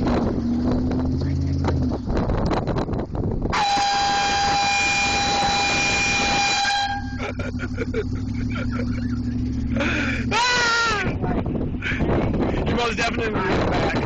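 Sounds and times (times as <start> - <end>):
air horn blast: 3.5 - 7.3.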